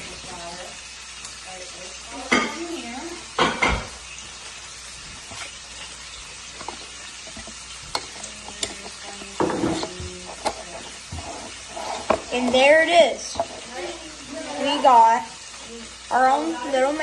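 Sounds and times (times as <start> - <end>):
pot clanking against a glass jar: 6.4 - 12.6.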